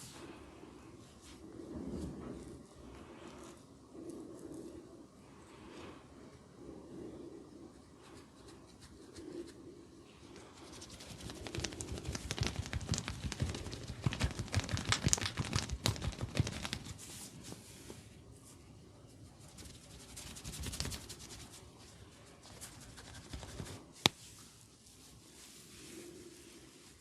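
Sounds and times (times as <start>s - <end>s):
hands rubbing head: 10.3s - 18.0s, 19.4s - 21.8s, 22.4s - 27.0s
hands tapping on head: 11.1s - 17.0s.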